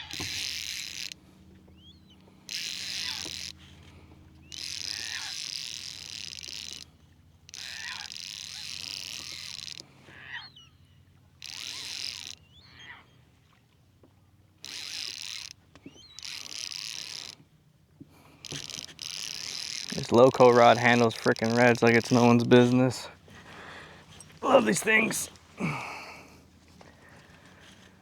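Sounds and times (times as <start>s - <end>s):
fishing reel whirring: 0.0s - 13.1s, 14.5s - 17.6s, 18.2s - 26.0s
faint bird chirps: 10.1s - 11.0s, 15.8s - 16.4s.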